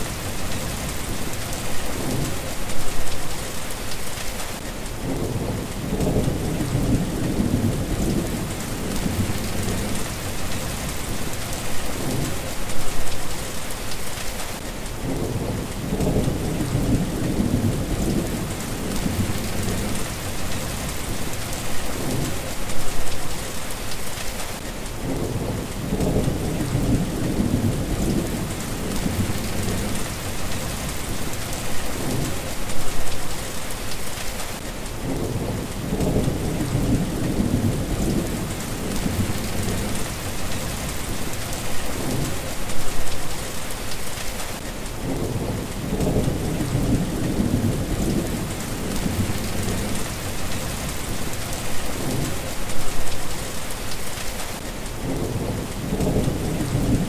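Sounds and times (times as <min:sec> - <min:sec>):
rain hissing: 0:00.0 - 0:57.0
low thunder rumbling: 0:05.0 - 0:12.9, 0:15.0 - 0:22.9, 0:25.0 - 0:33.1, 0:35.0 - 0:43.1, 0:45.0 - 0:53.2, 0:55.0 - 0:57.0.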